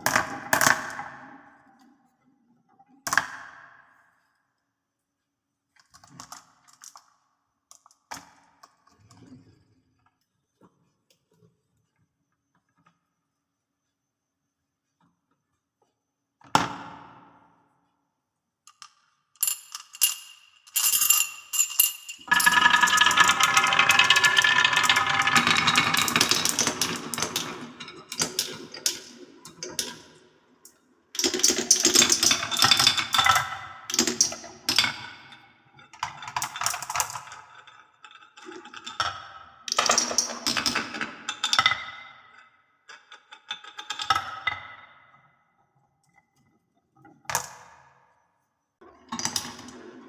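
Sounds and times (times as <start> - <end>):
balls rattling down wooden marble run: 18.7 - 44.9, 48.9 - 50.0.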